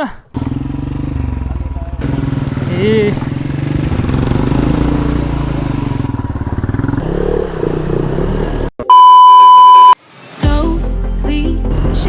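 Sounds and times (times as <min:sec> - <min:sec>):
motorcycle engine running: 0:00.4 - 0:07.2
high-pitched censor bleep: 0:08.8 - 0:10.0.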